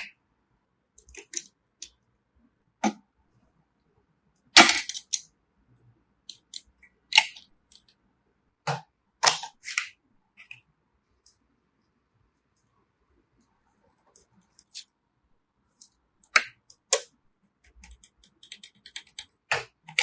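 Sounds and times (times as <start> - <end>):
computer parts clicking and clacking: 17.7 - 20.0.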